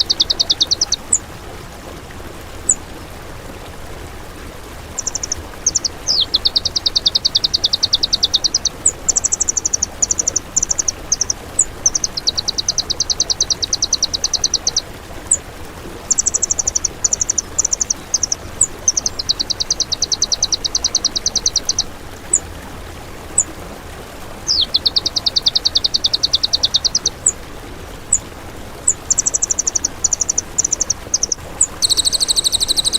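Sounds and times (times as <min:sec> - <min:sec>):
songbird trills and chips: 0:00.0 - 0:01.2, 0:05.0 - 0:15.4, 0:16.0 - 0:22.4, 0:24.4 - 0:27.4, 0:28.1 - 0:32.9.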